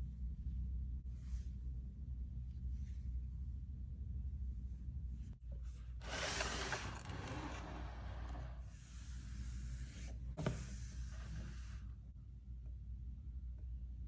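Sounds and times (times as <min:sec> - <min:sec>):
packaging rustling and sliding: 0:06.0 - 0:08.4.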